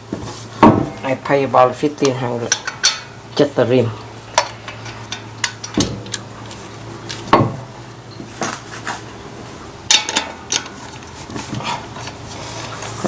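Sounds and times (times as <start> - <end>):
metal tools clinking: 2.4 - 3.2, 4.3 - 6.2, 9.9 - 11.0.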